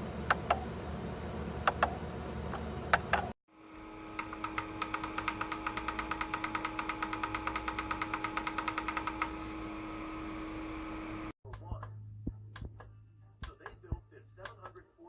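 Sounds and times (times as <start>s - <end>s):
steady hum: 0.0s - 14.7s
rapid machine clicking: 4.2s - 9.5s.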